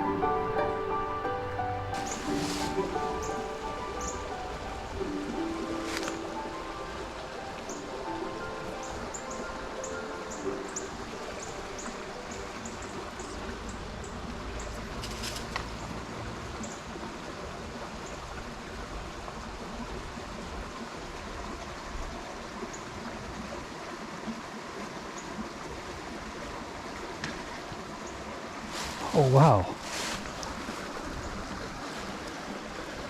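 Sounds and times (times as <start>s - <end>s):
stream rushing: 0.0s - 33.0s.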